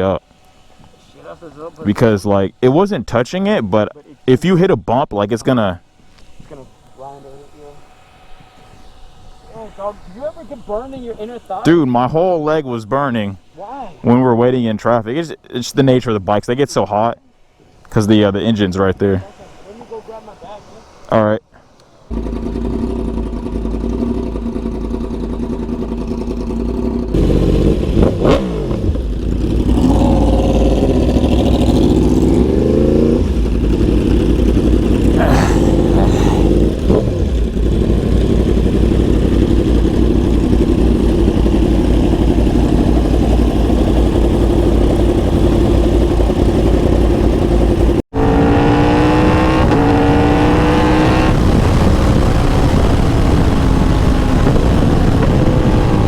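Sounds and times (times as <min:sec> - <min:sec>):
motorcycle engine revving: 0:22.1 - 0:56.0.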